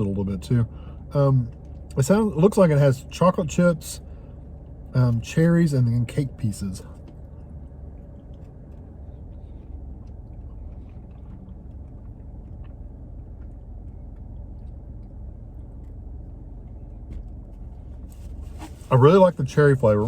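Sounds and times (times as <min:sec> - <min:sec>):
car engine idling: 0:00.0 - 0:20.0
quiet eating sounds: 0:06.8 - 0:18.3.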